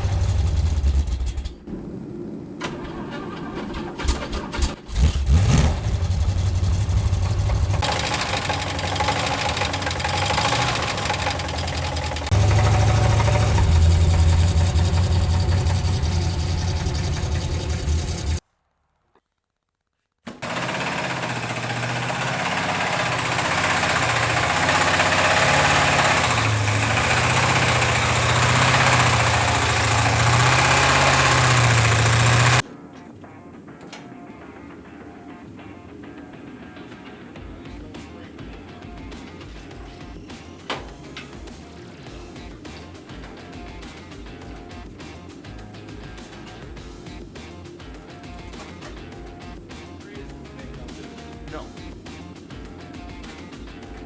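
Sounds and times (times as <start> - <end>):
engine idling with knock: 0.0 - 1.6, 4.0 - 18.4, 20.3 - 32.6.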